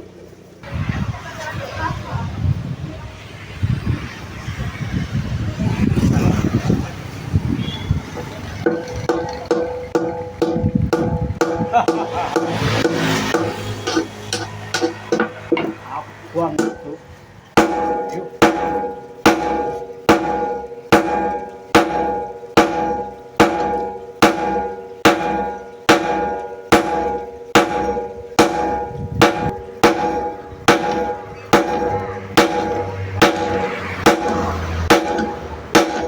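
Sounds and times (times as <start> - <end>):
hammer striking steel on anvil: 8.6 - 15.8, 16.5 - 36.0.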